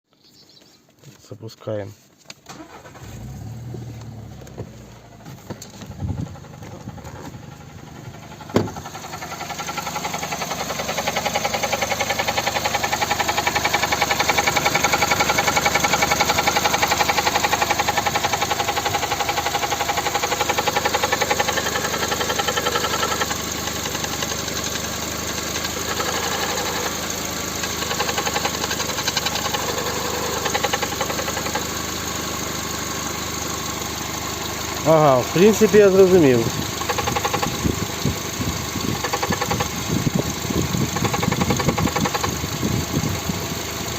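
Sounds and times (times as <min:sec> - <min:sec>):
petrol engine starting and running: 0:02.4 - 0:43.9
sharp clicks: 0:36.8 - 0:37.6.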